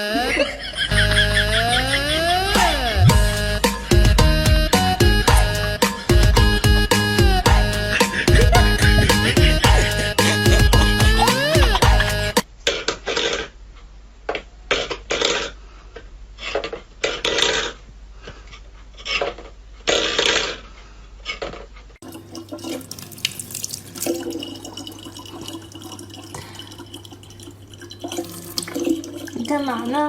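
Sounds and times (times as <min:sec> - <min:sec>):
water splashing: 0:22.0 - 0:30.0
water tap running: 0:22.0 - 0:30.0.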